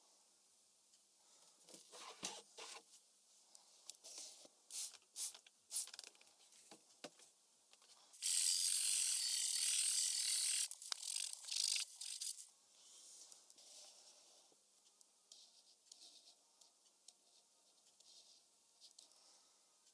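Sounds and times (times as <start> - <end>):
typewriter ratcheting rasp: 8.2 - 12.5.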